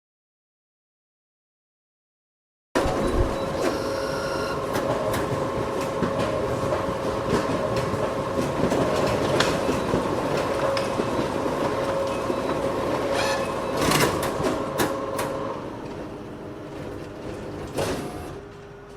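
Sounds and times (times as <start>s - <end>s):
copy machine whirring: 2.8s - 15.7s
copier clicks and clacks: 2.8s - 16.1s, 16.8s - 18.7s.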